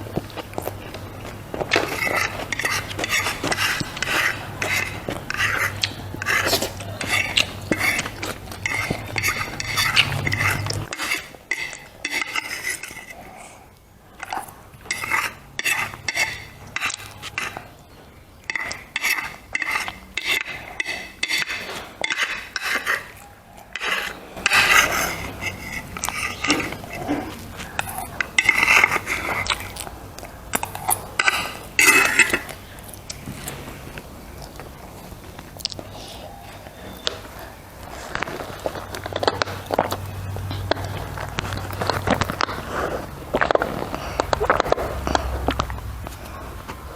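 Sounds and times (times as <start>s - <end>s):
cutlery clinking on a plate: 1.6s - 13.3s, 14.2s - 17.7s, 18.4s - 29.8s, 30.6s - 32.6s.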